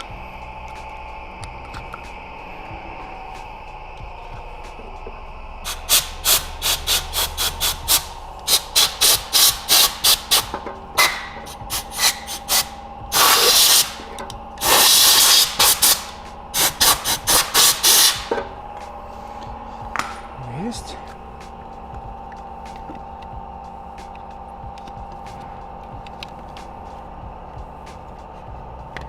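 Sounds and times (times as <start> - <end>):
compressed air blow gun hissing: 5.6 - 18.4.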